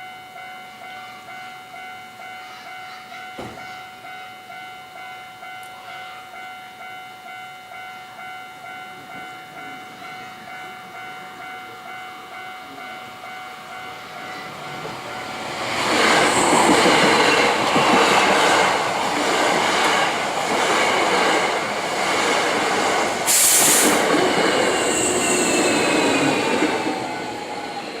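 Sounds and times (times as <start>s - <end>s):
train wheels on rails: 13.7s - 28.0s
falling whining tones: 14.2s - 28.0s
sharp hiss: 23.2s - 24.1s.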